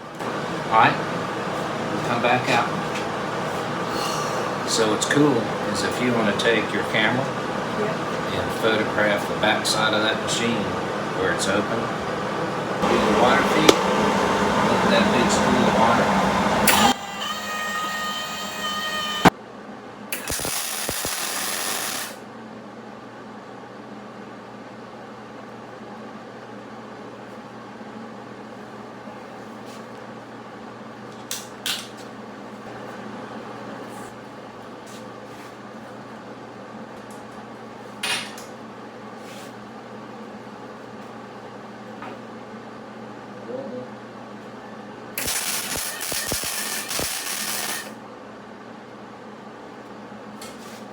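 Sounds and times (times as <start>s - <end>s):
steady machine hum: 0.0s - 23.5s, 44.2s - 50.3s
wire-feed motor whining: 11.2s - 19.3s, 20.2s - 22.2s, 45.2s - 48.0s.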